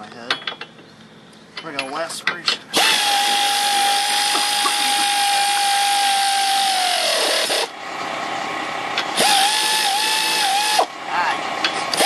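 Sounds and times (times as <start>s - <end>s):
power ratchet whining: 2.6s - 7.8s, 9.0s - 10.9s, 11.6s - 12.0s.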